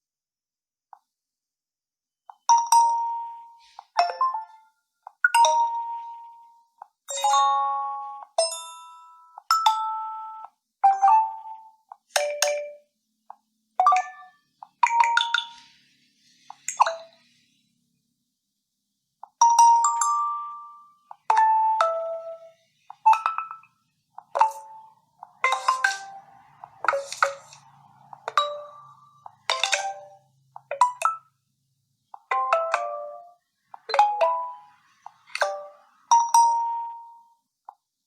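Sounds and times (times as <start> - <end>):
phone notification chimes: 25.4 - 26.2.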